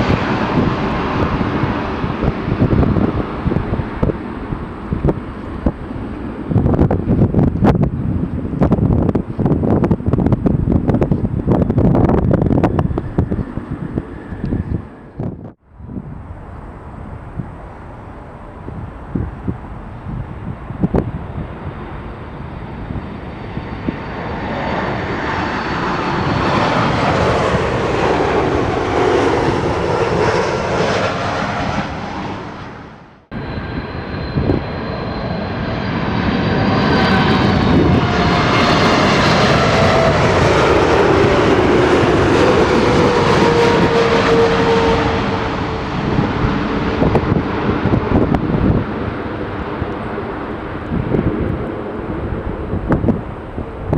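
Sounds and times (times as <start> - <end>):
jet airliner landing approach: 0.0 - 53.9
jet airliner taking off: 0.0 - 53.9.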